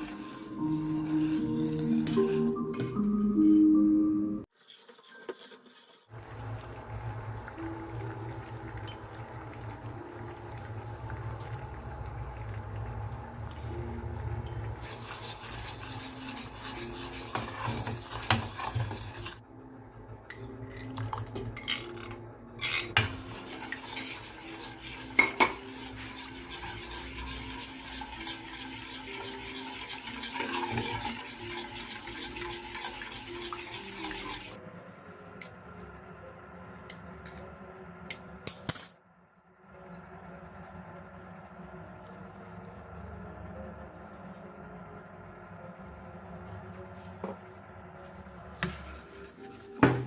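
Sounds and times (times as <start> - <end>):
utensil stirring in a bowl: 0.0 - 2.6, 14.8 - 19.4, 23.0 - 34.6, 48.6 - 49.9.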